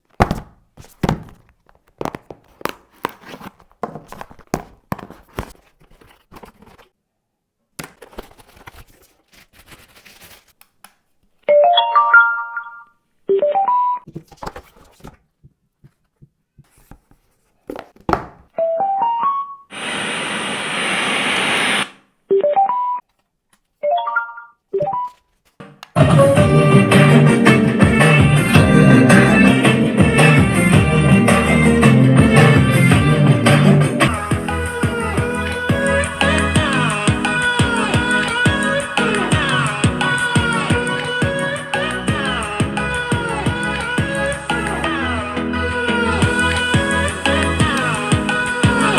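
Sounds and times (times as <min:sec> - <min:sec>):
plastic packaging clicks and knocks: 0:00.0 - 0:05.6
hiss-like burst: 0:19.7 - 0:22.0.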